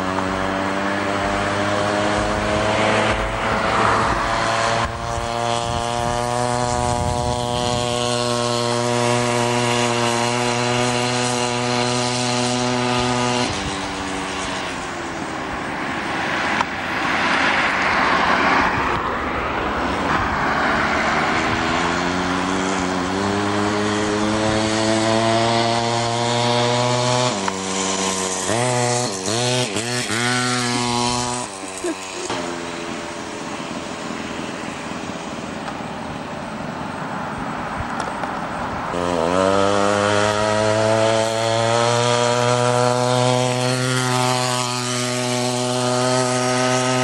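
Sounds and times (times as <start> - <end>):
chainsaw engine at high revs: 0.0 - 38.0, 38.7 - 47.0.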